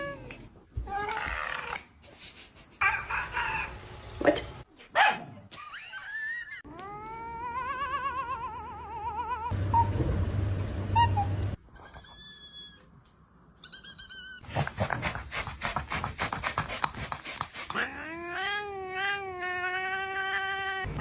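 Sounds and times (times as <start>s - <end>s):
cat chirping: 13.6s - 14.4s
cat yowling meow: 17.8s - 20.9s.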